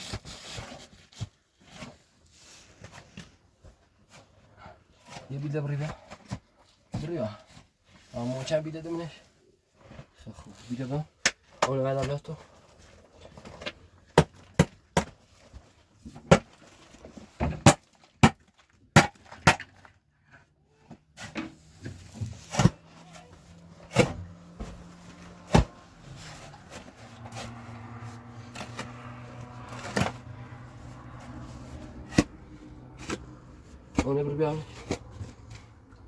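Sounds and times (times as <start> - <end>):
sharp knocks of building work: 14.1 - 15.2.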